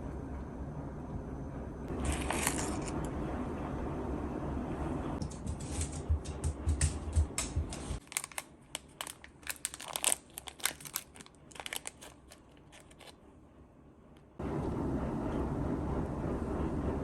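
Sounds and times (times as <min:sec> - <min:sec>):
low hum: 0:00.0 - 0:08.0, 0:09.0 - 0:17.0
packaging crinkling and crackling: 0:01.9 - 0:03.0, 0:08.0 - 0:13.2.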